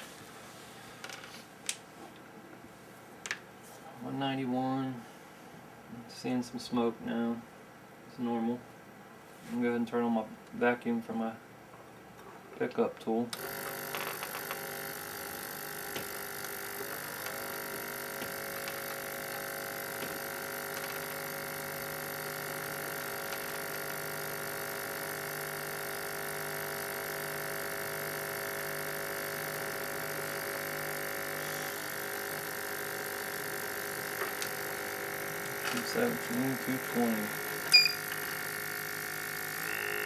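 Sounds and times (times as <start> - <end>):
heater blower: 13.4 - 40.0
vacuum pump humming: 13.4 - 40.0.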